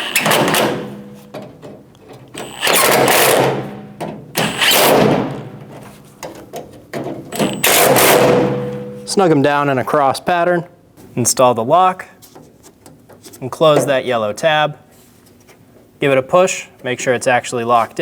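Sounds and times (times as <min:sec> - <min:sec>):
power driver running: 0:02.4 - 0:05.6, 0:07.4 - 0:08.8.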